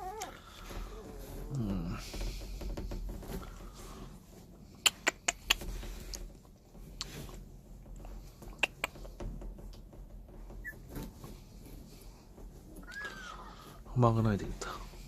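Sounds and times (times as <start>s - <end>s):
faint puppy squeaks: 0.0s - 1.6s, 10.6s - 10.9s, 12.8s - 13.5s
puppies shuffling: 0.0s - 4.8s, 5.4s - 15.0s.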